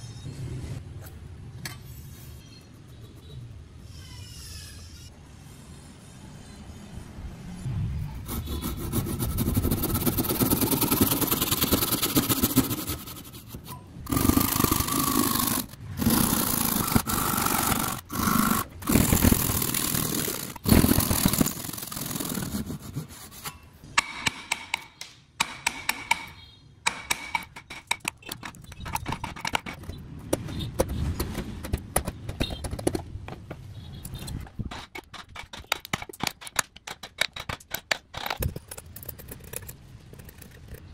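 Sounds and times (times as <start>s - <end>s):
hand saw sawing wood: 8.2s - 23.5s
rapid small clicks and taps: 35.0s - 40.9s.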